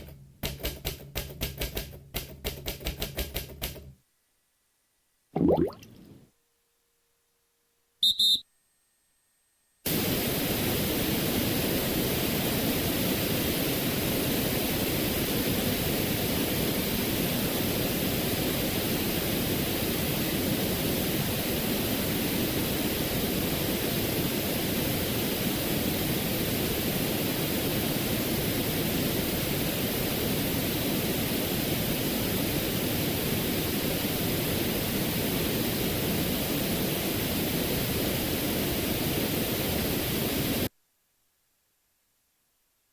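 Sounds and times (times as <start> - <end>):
steady hissing: 9.9 - 40.7.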